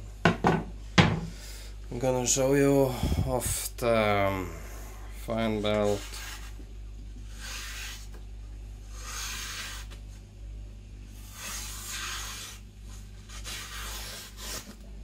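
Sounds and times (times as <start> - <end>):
knife slicing through paper: 5.8 - 6.5, 7.3 - 8.2, 8.9 - 10.0, 11.2 - 14.8.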